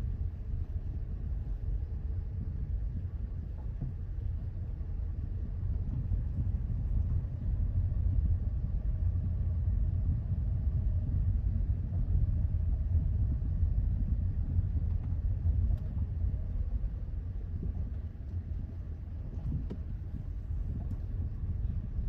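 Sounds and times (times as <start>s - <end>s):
car road rumble: 0.0s - 22.0s.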